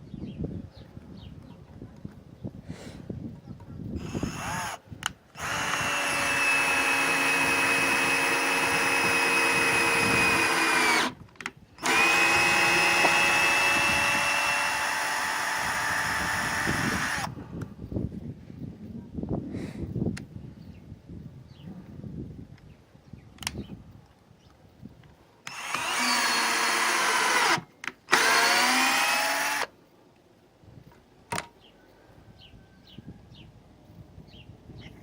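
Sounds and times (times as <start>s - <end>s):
cordless drill running: 4.0s - 4.8s, 5.4s - 11.2s, 11.8s - 17.4s, 25.5s - 29.7s.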